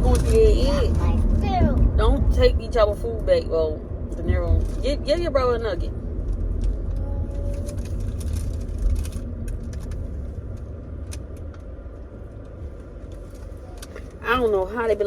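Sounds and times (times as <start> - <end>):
car cabin rumble: 0.0 - 15.0
light clicks and rustles: 6.2 - 14.2.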